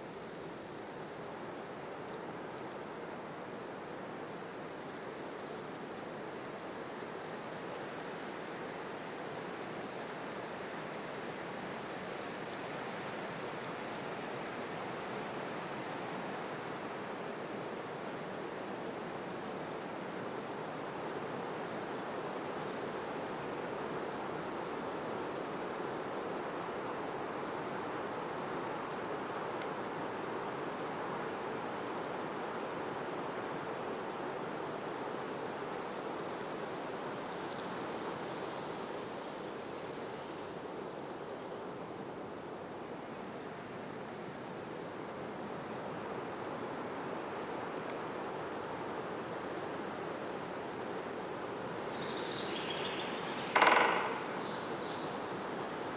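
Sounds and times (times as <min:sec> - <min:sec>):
rushing wind or water: 0:08.1 - 0:42.6, 0:43.2 - 0:55.9
faint high bird chirps: 0:51.8 - 0:55.2.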